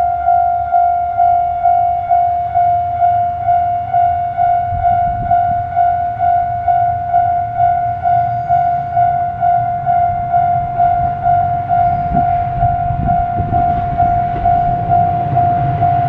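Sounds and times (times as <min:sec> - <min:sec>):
level-crossing electronic bell: 0:00.0 - 0:16.0
low rumble: 0:08.9 - 0:16.0.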